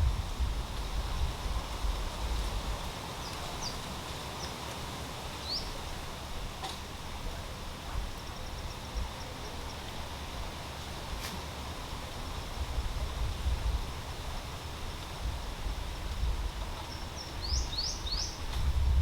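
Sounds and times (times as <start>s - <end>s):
wind on microphone: 0.0s - 2.9s, 12.5s - 14.4s, 15.2s - 16.8s, 17.4s - 19.0s.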